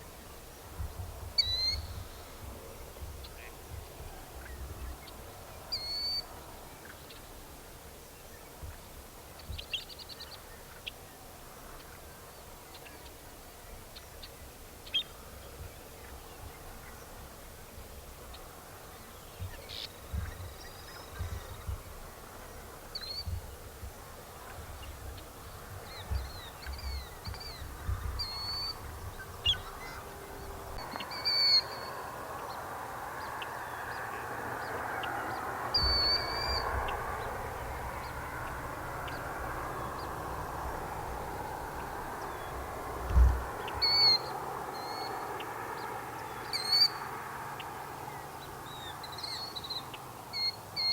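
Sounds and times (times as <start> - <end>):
distant bird calling din: 19.2 - 50.9
marsh birds calling: 24.4 - 45.5.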